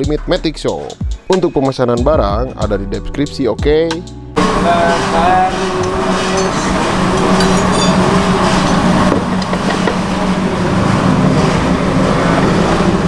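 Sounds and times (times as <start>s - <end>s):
scooter engine humming: 4.4s - 13.0s.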